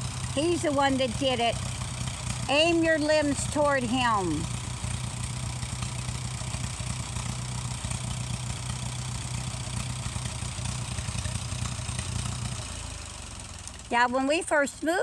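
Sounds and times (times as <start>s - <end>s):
tractor engine idling: 0.0s - 15.0s.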